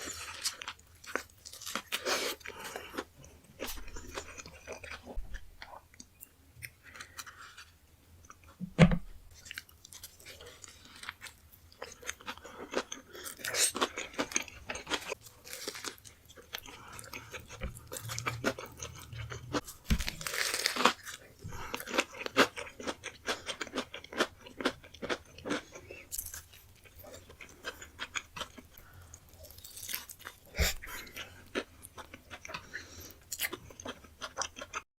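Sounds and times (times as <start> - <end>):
loud thump: 8.6 - 9.2, 19.9 - 20.2.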